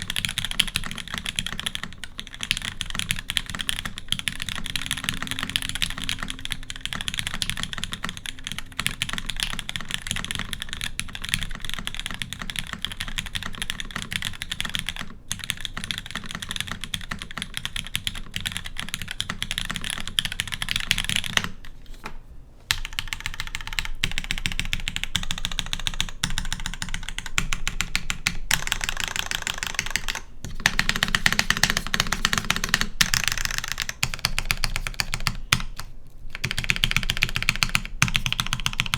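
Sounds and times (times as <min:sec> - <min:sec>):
fast mechanical keyboard typing: 0:00.0 - 0:21.7, 0:22.7 - 0:38.9.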